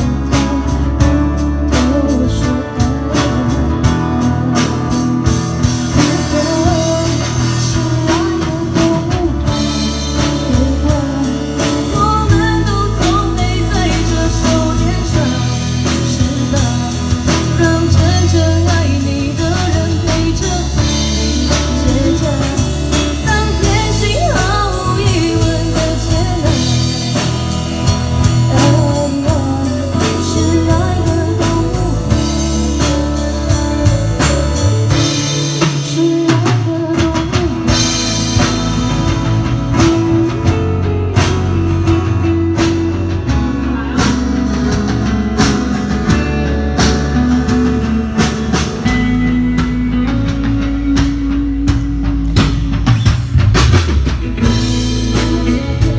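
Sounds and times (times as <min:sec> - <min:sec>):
person singing: 0:00.0 - 0:53.4, 0:54.2 - 0:55.9
drum kit: 0:00.0 - 0:55.9
electric guitar: 0:00.0 - 0:55.9
live rock band playing: 0:00.0 - 0:55.9.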